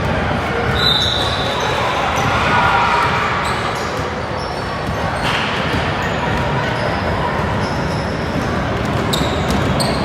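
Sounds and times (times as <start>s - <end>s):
shoe squeaks: 0.7s - 2.0s, 3.4s - 5.4s, 6.0s - 10.0s.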